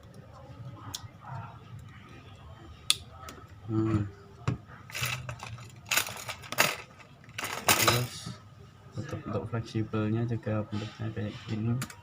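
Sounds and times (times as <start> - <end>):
small parts scraping and rattling: 4.9 - 8.4.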